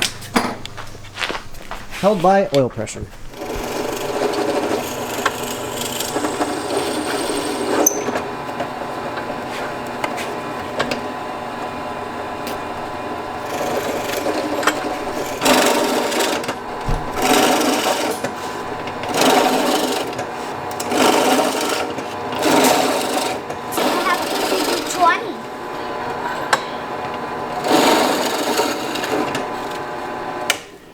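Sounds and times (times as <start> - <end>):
electric drill spinning: 3.3 - 30.8.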